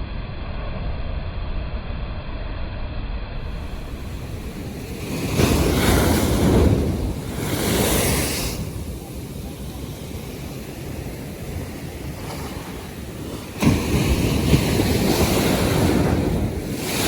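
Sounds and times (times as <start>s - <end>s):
waves washing in: 3.4s - 17.0s
wind rumble on microphone: 3.4s - 17.0s.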